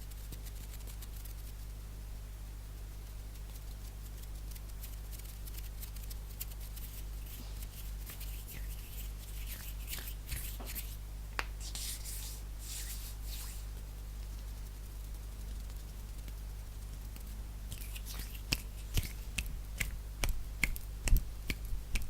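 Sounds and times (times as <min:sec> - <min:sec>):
palms rubbing together: 0:03.7 - 0:11.0, 0:11.6 - 0:13.7, 0:16.9 - 0:19.9
finger taps and flicks: 0:15.6 - 0:22.0.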